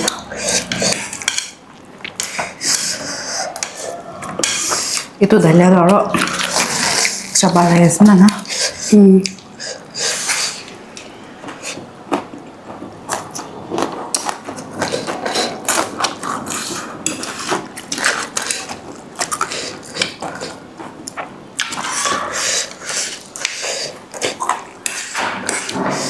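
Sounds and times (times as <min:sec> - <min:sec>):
utensils scraping a bowl: 0:00.0 - 0:01.6, 0:02.2 - 0:11.8, 0:21.6 - 0:26.0
slurping and chewing noodles: 0:00.0 - 0:05.2, 0:06.1 - 0:26.0.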